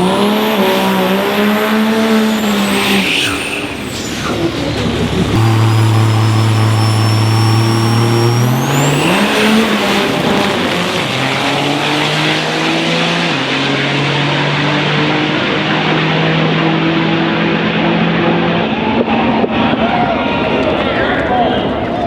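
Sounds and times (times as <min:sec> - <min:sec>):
diesel truck engine revving: 0:00.0 - 0:19.1
turbo whistle: 0:05.3 - 0:12.4.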